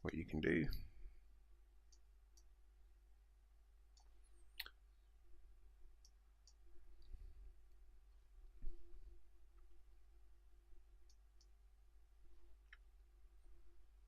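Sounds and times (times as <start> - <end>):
faint computer mouse clicks: 1.9 - 2.5.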